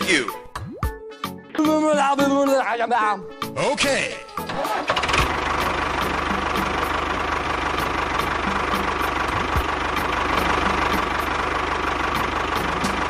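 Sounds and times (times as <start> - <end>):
small engine idling: 4.4 - 13.0.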